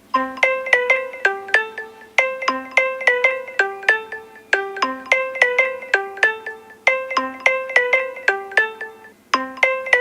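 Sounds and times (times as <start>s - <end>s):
phone ringtone melody: 0.0s - 10.0s.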